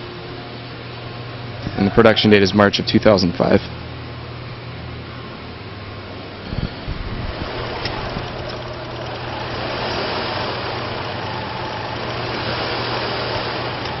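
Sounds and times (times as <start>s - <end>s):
car engine idling: 7.3s - 14.0s.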